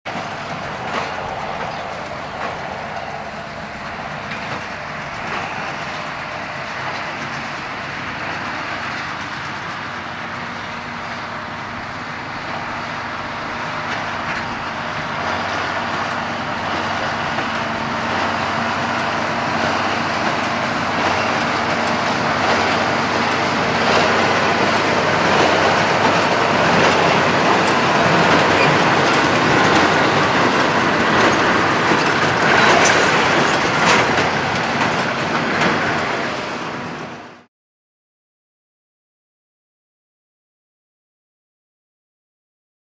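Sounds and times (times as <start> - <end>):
tractor engine under load: 0.1 - 37.5
baler mechanical clatter: 3.8 - 36.9.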